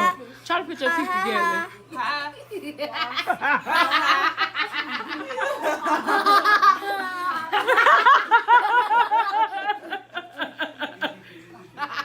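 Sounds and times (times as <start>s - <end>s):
people laughing: 2.4s - 12.0s.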